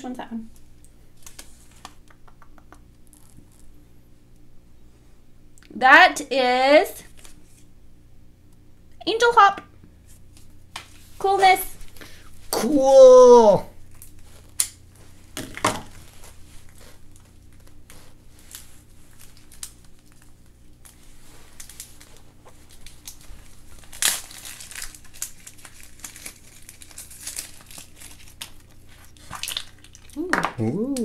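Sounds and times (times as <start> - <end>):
plastic packaging crinkling: 15.5 - 30.2.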